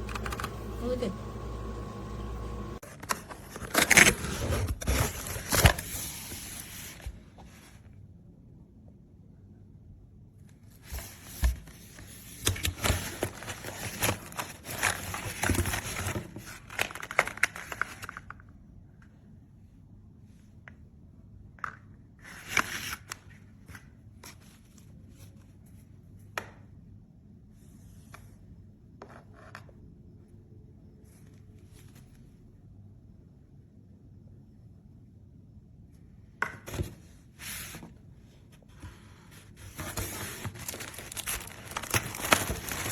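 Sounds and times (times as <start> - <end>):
rustling handling noise: 36.7 - 42.9.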